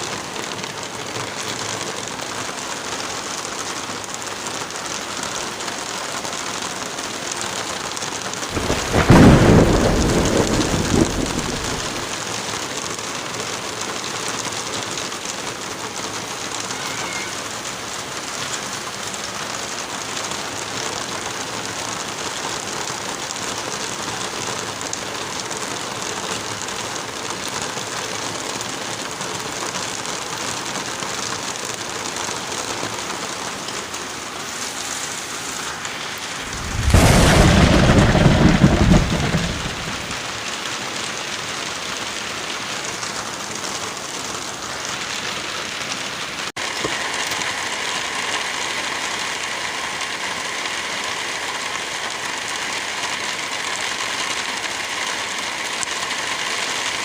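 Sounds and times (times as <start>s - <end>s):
steady rain: 0.0s - 57.0s
wind blowing through trees: 32.7s - 41.8s
loud deep rumble: 36.4s - 40.2s.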